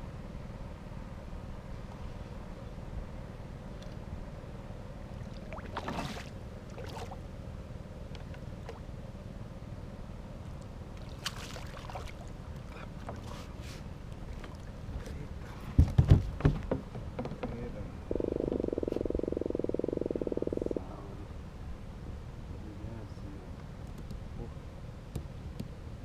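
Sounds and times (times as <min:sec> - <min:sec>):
water splashing: 0:05.2 - 0:07.2, 0:11.0 - 0:13.4
low rumble: 0:17.5 - 0:22.7.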